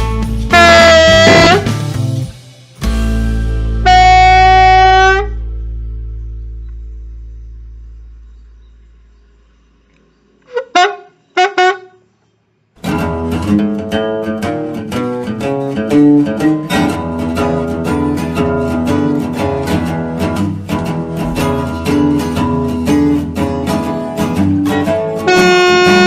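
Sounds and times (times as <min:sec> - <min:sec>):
plucked guitar music: 0:00.0 - 0:08.7, 0:12.8 - 0:26.0
short sharp pitched blips: 0:00.6 - 0:01.8
low hum: 0:03.4 - 0:10.5.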